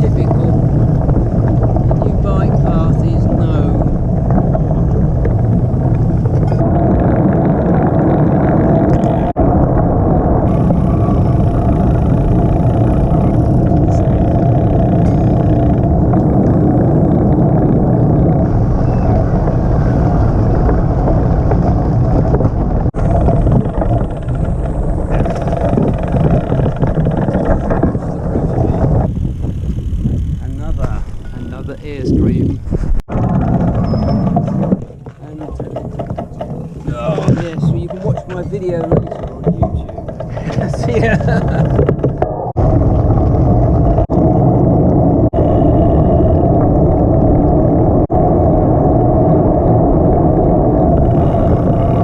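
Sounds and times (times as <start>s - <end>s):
vehicle engine running: 10.4s - 31.7s.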